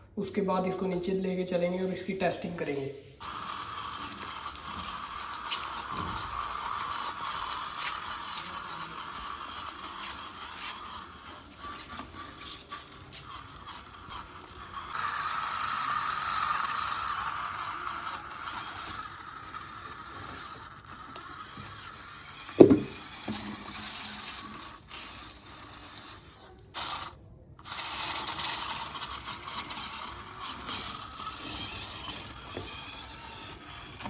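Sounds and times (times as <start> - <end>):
small electric motor whirring: 3.2 - 34.0
sharp thump: 22.6 - 23.0.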